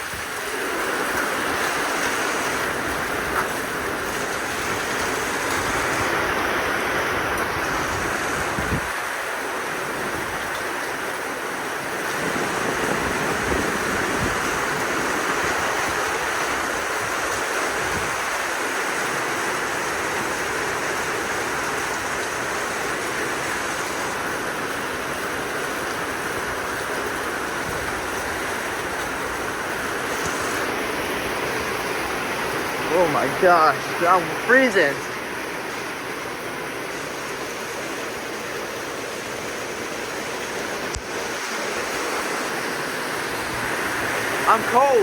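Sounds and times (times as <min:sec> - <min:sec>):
strong wind blowing: 0:00.0 - 0:09.0, 0:11.9 - 0:19.0
wind gusts buffeting microphone: 0:00.0 - 0:45.0.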